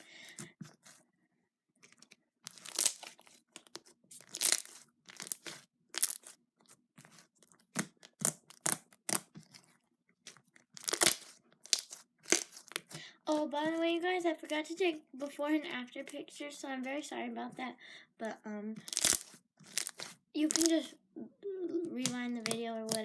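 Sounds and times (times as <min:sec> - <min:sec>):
slime squishing with crunchy pops: 0:01.8 - 0:13.4, 0:18.8 - 0:20.9, 0:22.0 - 0:23.0.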